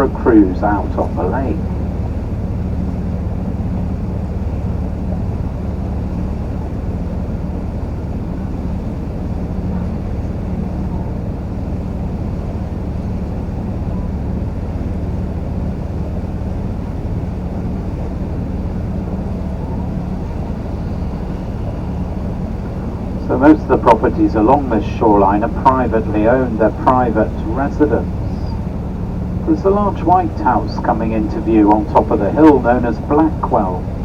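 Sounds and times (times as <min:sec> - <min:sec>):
boat engine humming: 0:00.0 - 0:34.0
water wash: 0:16.0 - 0:34.0.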